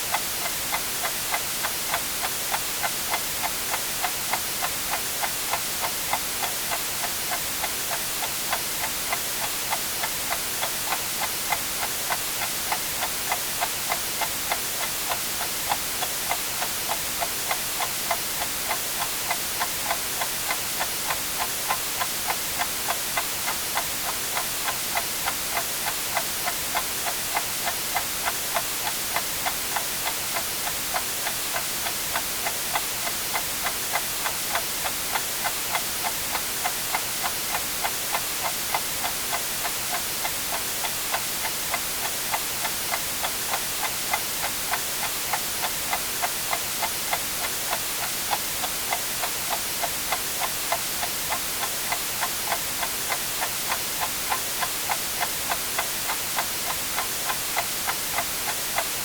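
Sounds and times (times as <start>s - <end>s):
white noise hiss: 0.0s - 59.0s
mechanical clock ticking: 0.1s - 59.0s.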